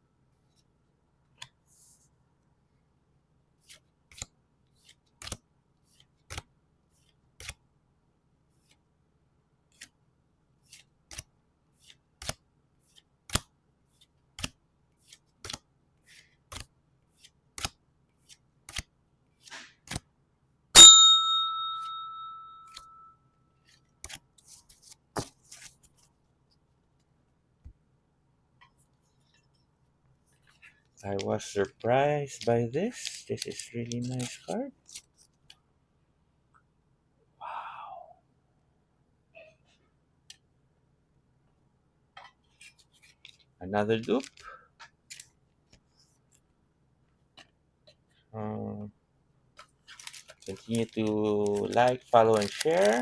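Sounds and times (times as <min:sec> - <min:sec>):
small bell ding: 0:20.8 - 0:23.2.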